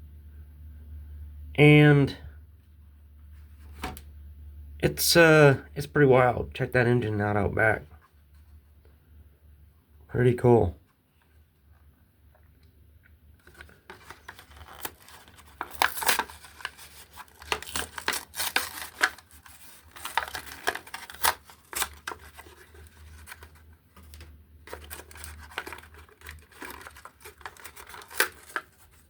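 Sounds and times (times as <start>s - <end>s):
cardboard tearing: 13.4s - 29.0s
plastic packaging crackling: 13.4s - 29.0s.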